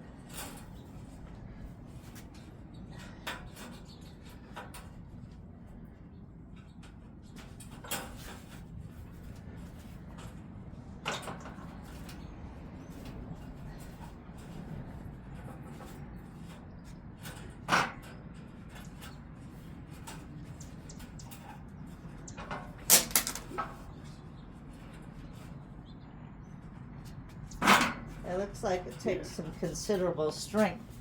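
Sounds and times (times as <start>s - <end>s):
wire mesh scraping on metal bars: 12.9s - 25.7s
metal clanks: 22.3s - 23.9s.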